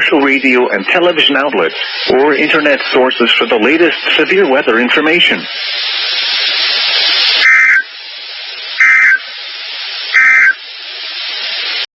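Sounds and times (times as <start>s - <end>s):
warbling data bursts: 0.0s - 10.7s
radio static hiss: 0.0s - 11.9s.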